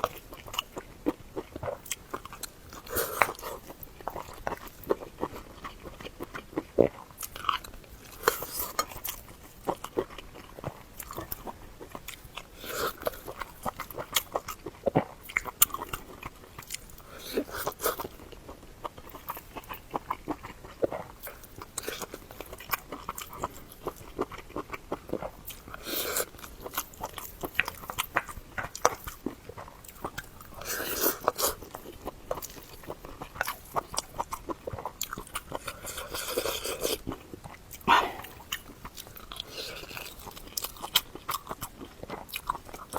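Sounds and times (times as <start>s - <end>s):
crunchy chewing: 0.0s - 42.9s.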